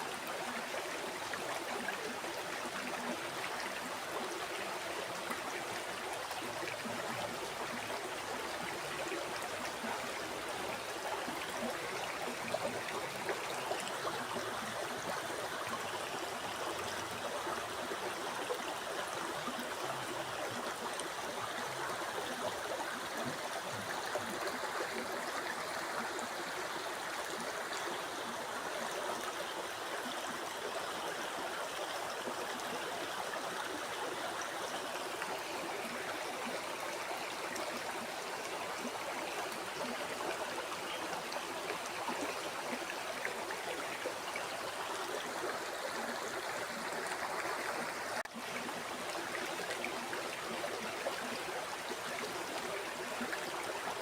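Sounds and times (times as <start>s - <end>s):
river water babbling over stones: 0.0s - 54.0s.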